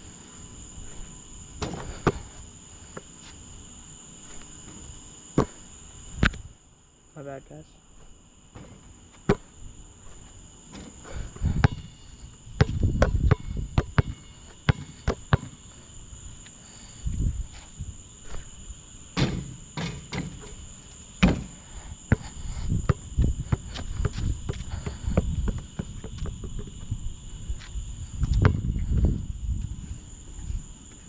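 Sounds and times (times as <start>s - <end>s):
insects chirring: 0.0s - 31.0s
basketball bouncing on court: 12.6s - 15.6s, 28.2s - 28.7s.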